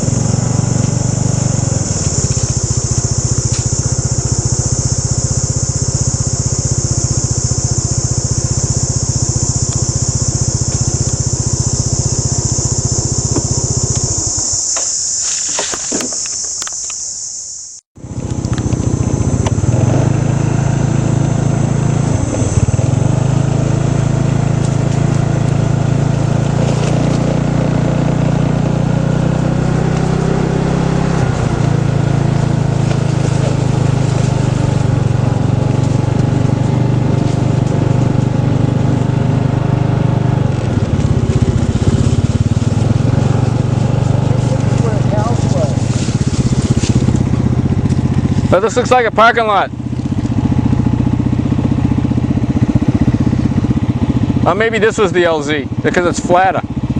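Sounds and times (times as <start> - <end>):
high-pitched hiss: 0.0 - 27.4, 40.4 - 47.6
vehicle engine running: 0.0 - 56.9.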